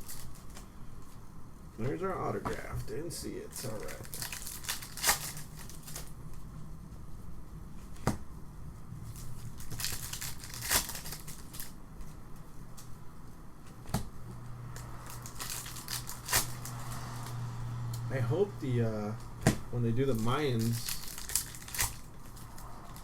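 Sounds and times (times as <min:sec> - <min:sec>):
card wrappers crinkling: 0:00.0 - 0:01.2, 0:03.5 - 0:06.5, 0:09.0 - 0:12.2, 0:14.7 - 0:17.4, 0:19.8 - 0:23.0.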